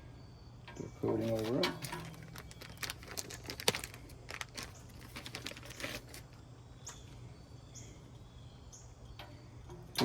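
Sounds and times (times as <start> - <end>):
small parts clicking and crinkling: 1.2 - 6.4.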